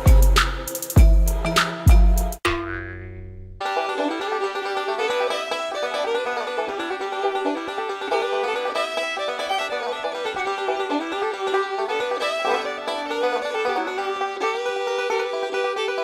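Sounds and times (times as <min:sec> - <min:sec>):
decaying tone: 0:00.0 - 0:03.6
lively instrumental music: 0:00.0 - 0:16.0.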